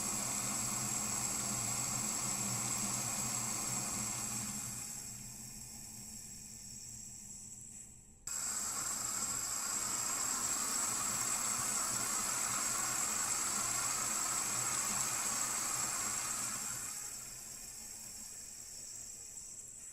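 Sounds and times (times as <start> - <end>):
tap water running into sink: 8.3 - 16.8
faucet turned on: 8.3 - 17.5.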